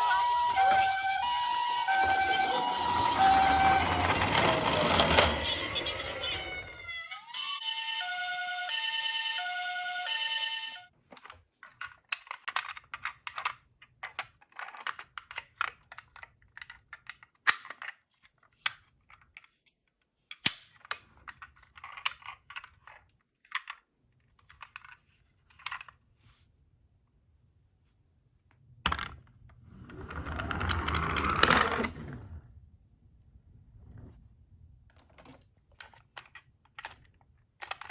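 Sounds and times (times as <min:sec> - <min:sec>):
rushing rolling noise: 0:00.0 - 0:06.8, 0:29.4 - 0:35.1
toy electronic two-tone siren: 0:00.0 - 0:10.9
small plastic clicks and rattles: 0:11.1 - 0:26.0, 0:35.0 - 0:37.9.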